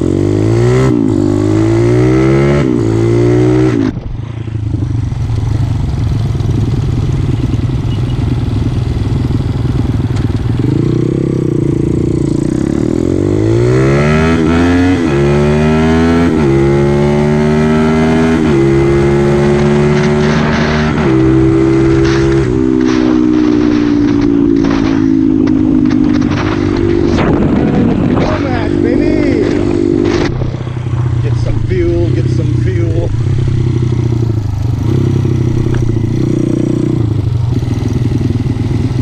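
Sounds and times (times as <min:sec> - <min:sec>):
motorbike engine accelerating: 0:00.0 - 0:39.0
wind buffeting microphone: 0:18.4 - 0:32.2.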